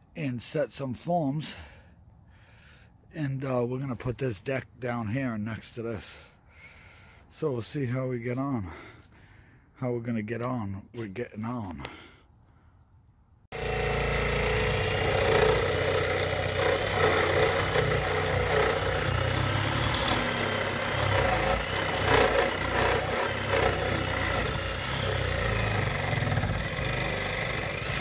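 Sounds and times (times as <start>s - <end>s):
reciprocating saw cutting nails: 13.5s - 28.0s.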